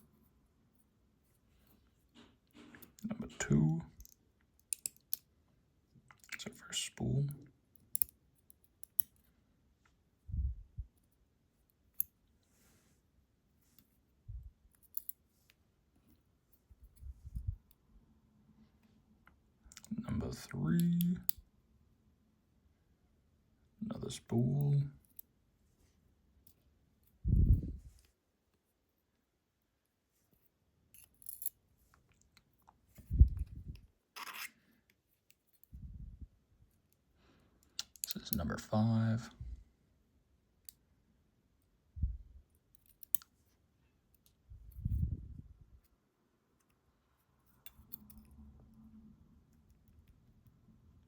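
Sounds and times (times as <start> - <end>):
small lock pins clicking: 4.0 - 5.3, 7.8 - 9.3, 14.7 - 15.2, 42.7 - 43.3, 47.5 - 48.4
small metal parts scraping: 34.2 - 34.6.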